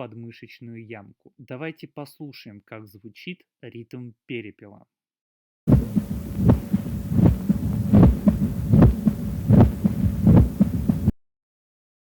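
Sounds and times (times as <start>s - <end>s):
low hum: 5.7s - 11.1s
heartbeat through stethoscope: 5.7s - 11.2s.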